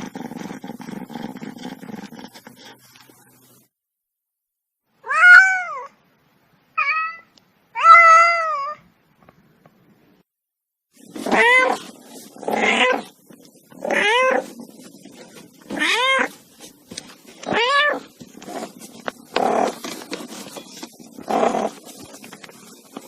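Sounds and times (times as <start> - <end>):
cat meowing: 5.0 - 6.0, 6.8 - 8.8, 11.2 - 11.8, 13.8 - 14.5, 15.7 - 16.4, 17.4 - 18.2.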